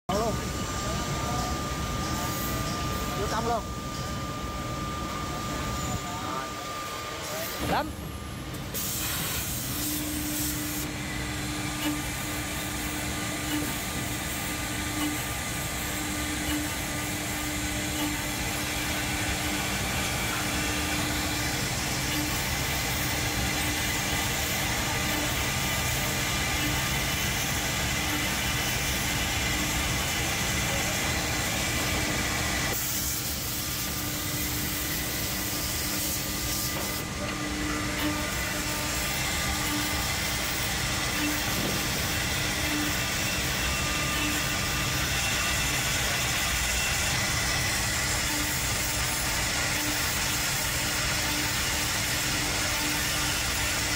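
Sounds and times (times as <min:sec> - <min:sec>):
drilling and milling machine running: 0:00.1 - 0:53.9
low machine hum: 0:00.1 - 0:53.9.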